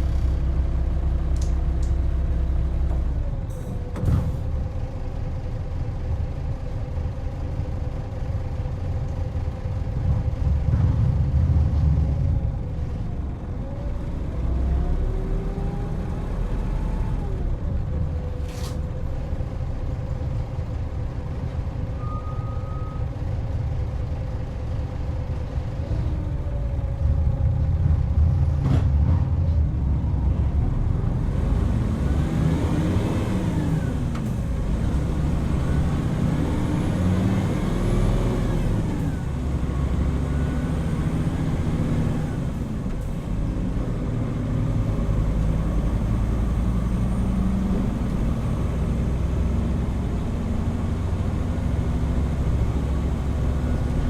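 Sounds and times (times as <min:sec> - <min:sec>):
bus diesel engine droning: 0:00.0 - 0:54.0
click: 0:01.4 - 0:02.0
brief tone: 0:21.9 - 0:23.2.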